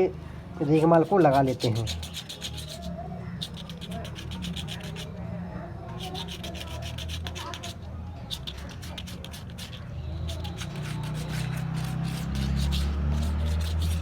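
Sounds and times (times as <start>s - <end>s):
sandpaper rubbing on metal: 0.6s - 5.1s, 6.0s - 14.0s.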